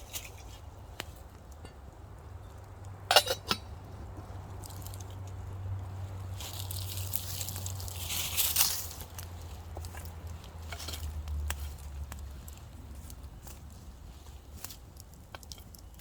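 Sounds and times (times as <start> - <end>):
rustling: 6.4 - 14.8.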